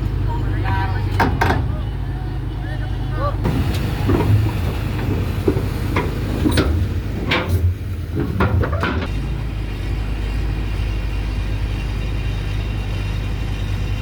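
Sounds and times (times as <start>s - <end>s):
heavy vehicle engine rumbling: 0.0s - 14.0s.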